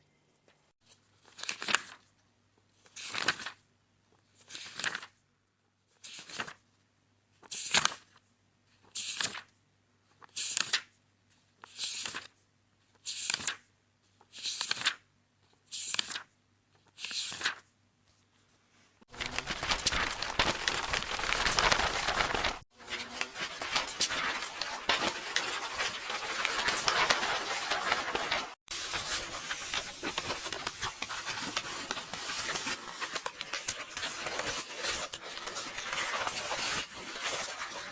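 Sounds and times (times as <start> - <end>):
book pages turning: 0.9 - 2.1, 2.8 - 3.6, 4.2 - 5.2, 6.0 - 6.6, 7.4 - 8.2, 8.8 - 9.5, 10.1 - 10.9, 11.5 - 37.9
paper tearing: 19.1 - 37.9.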